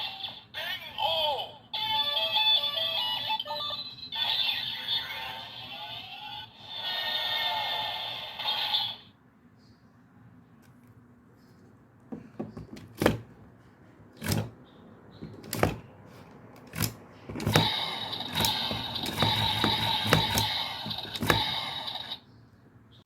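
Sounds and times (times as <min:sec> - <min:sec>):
electronic toy sound effect: 0:00.0 - 0:09.1, 0:17.5 - 0:22.2
plastic toy clicks and knocks: 0:16.6 - 0:21.7.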